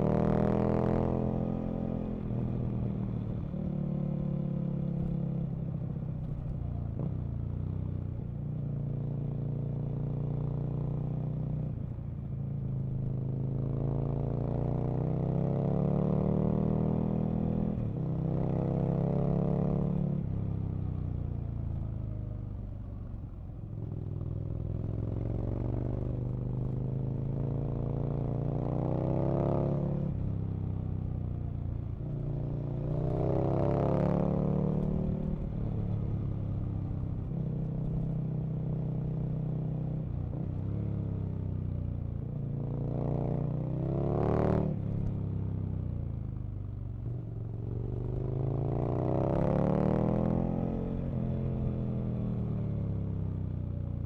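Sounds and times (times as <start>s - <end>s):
motorcycle engine revving: 42.9s - 45.4s, 47.6s - 52.4s.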